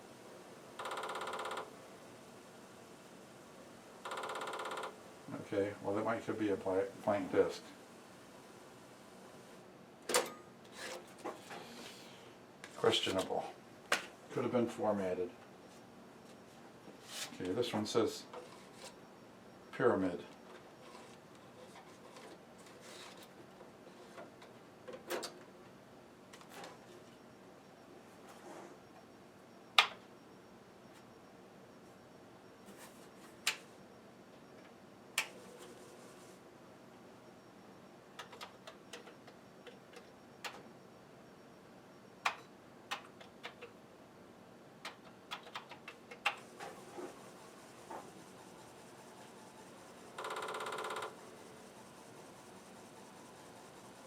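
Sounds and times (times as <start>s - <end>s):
faint steady hum: 0.0s - 54.0s
computer and disk drive clicks: 42.2s - 43.8s.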